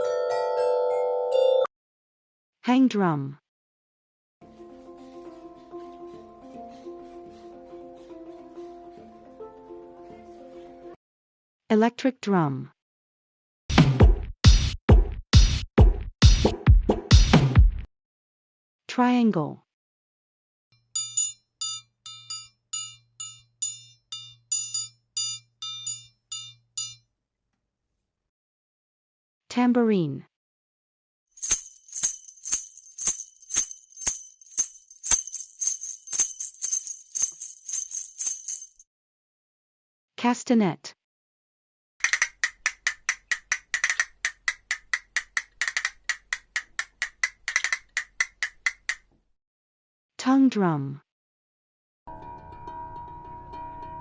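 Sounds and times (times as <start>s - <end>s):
triangle ringing: 20.9s - 27.0s, 31.4s - 38.8s, 52.1s - 54.0s
castanets clicking: 42.0s - 49.0s.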